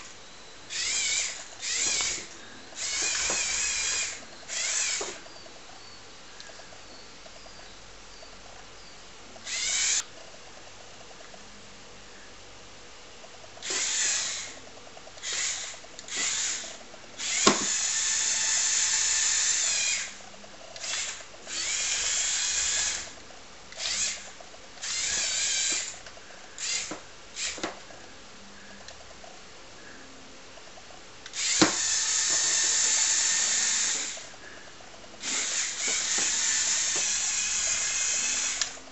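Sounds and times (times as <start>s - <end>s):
small electric motors whirring: 0.7s - 5.5s, 9.4s - 10.1s, 13.6s - 14.6s, 15.2s - 27.7s, 31.3s - 34.4s, 35.2s - 38.9s.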